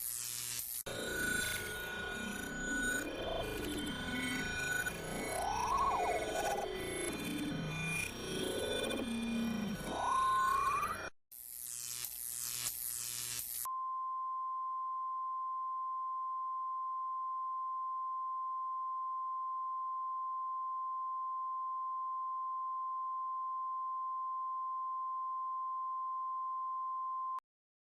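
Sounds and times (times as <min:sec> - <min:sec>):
electronic noise with falling sweeps: 0:00.9 - 0:11.1.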